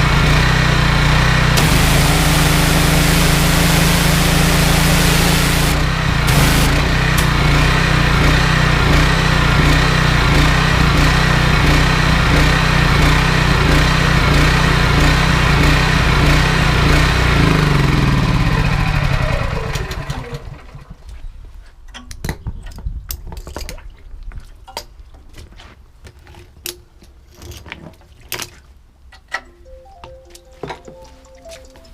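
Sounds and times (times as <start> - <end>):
petrol engine running and winding down: 0.0 - 20.9.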